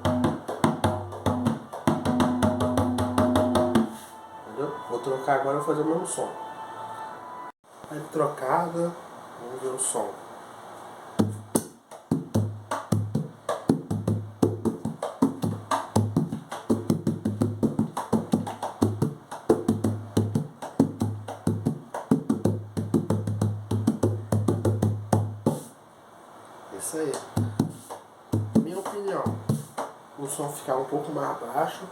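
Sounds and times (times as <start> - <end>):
hand drum slaps and bass notes: 0.0 - 4.0, 11.2 - 25.7, 27.3 - 30.0.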